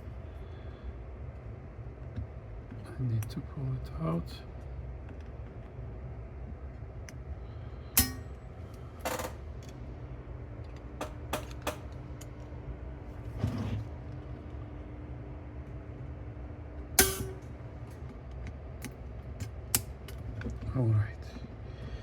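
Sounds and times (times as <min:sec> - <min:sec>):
low steady hum: 0:00.0 - 0:22.0
clicks and knocks of parts: 0:10.7 - 0:12.4.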